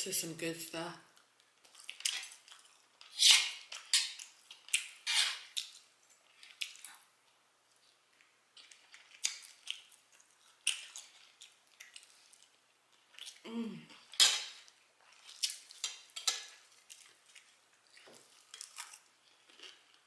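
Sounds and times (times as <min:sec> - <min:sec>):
chewing meat with wet smacks: 0:01.5 - 0:05.0, 0:08.1 - 0:13.4, 0:14.0 - 0:20.0.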